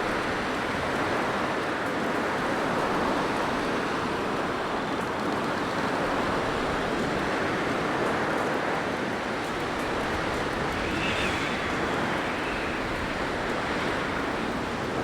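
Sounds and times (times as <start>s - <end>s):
blizzard wind blowing: 9.2s - 15.0s.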